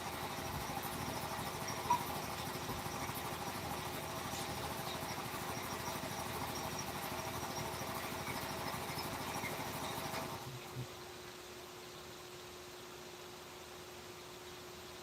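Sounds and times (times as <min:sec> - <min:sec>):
small motor running: 0:00.0 - 0:10.9.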